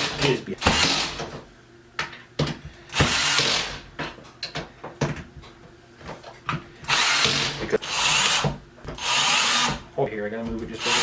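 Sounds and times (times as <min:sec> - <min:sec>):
power drill driving screws: 0:00.0 - 0:01.2, 0:02.9 - 0:03.8, 0:06.9 - 0:09.8, 0:10.8 - 0:11.0.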